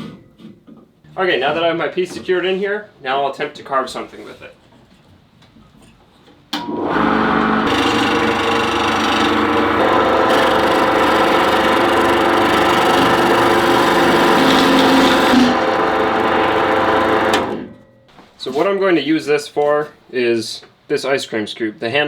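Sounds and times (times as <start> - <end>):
wood lathe motor running: 6.6 - 17.6
chisel scraping spinning wood: 6.9 - 17.5.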